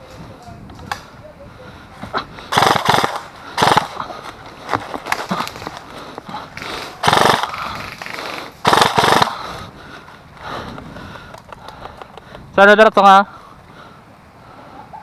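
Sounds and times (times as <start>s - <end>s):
airsoft guns firing bursts: 2.5s - 4.0s, 6.6s - 9.5s.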